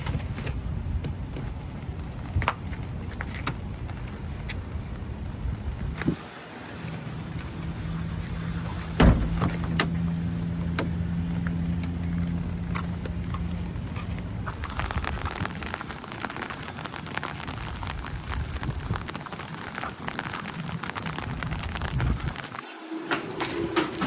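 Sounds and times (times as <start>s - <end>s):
rain pattering: 0.0s - 24.0s
heavy door thud: 8.9s - 10.0s.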